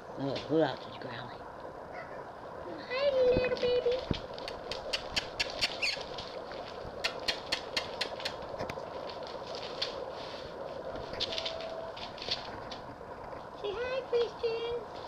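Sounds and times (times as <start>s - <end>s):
faint steady hum: 0.0s - 15.0s
puppies scuffling: 3.5s - 13.5s.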